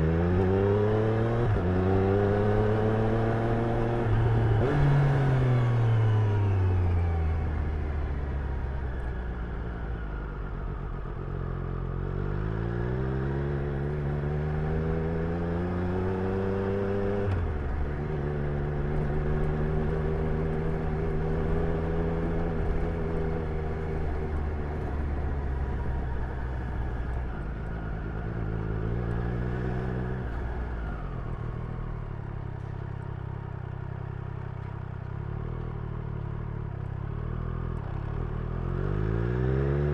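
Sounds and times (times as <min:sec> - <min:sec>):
motorcycle engine revving: 0:00.0 - 0:06.5, 0:11.8 - 0:30.6, 0:37.1 - 0:39.9.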